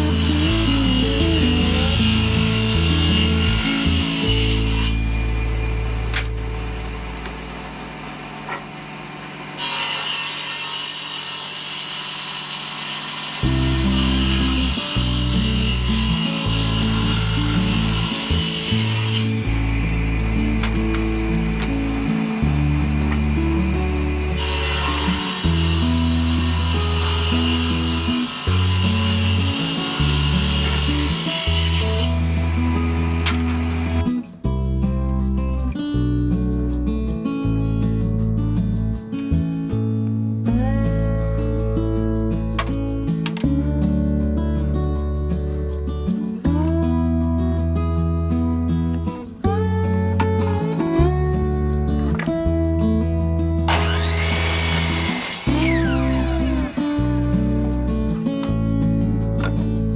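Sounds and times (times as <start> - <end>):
background music with bass line: 0.0 - 7.4, 13.4 - 59.9
woodworking tool rasping: 10.0 - 22.3, 24.3 - 34.1, 53.7 - 57.5
tool scraping on wood: 53.7 - 57.0.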